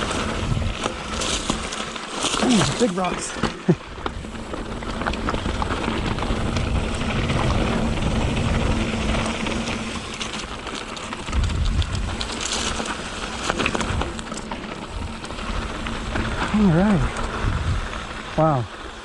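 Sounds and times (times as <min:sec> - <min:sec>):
wind buffeting microphone: 0:00.0 - 0:01.5, 0:03.9 - 0:18.4
bike rattling over rocks: 0:00.0 - 0:19.0.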